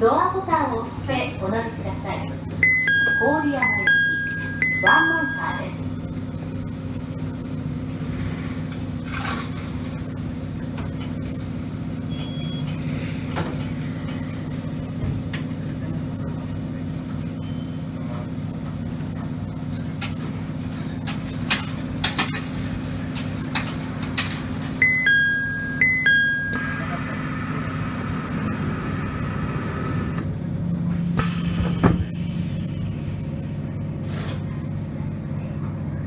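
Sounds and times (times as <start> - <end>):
electric train hum: 0.0 - 36.0.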